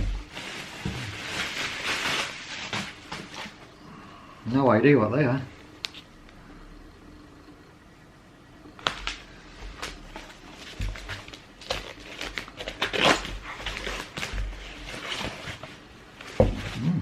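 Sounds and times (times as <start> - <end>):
rustling of packaging: 0.0 - 3.8, 8.8 - 16.8
dull thuds: 16.3 - 17.0.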